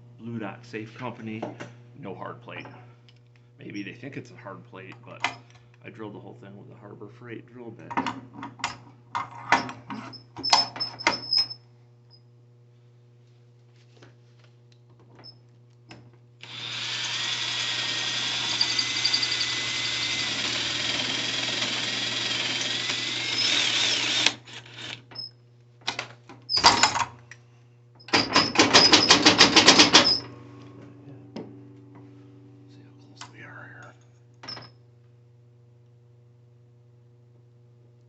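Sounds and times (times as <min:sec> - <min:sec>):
power drill cutting into steel: 0:16.4 - 0:25.3, 0:28.1 - 0:30.3.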